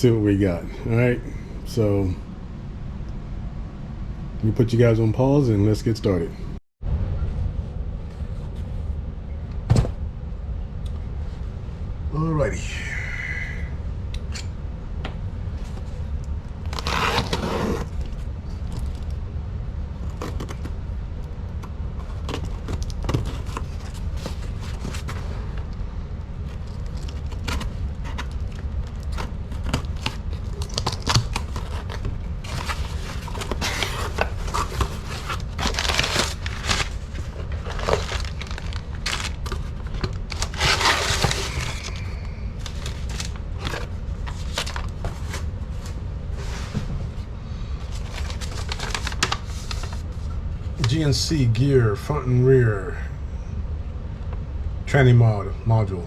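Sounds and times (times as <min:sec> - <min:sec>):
steady low hum: 0:00.0 - 0:56.0
packaging rustling: 0:26.5 - 0:45.5, 0:47.8 - 0:50.1.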